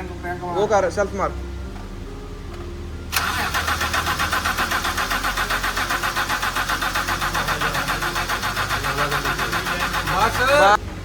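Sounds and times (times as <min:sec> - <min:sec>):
engine cranking without firing: 0:03.1 - 0:10.8.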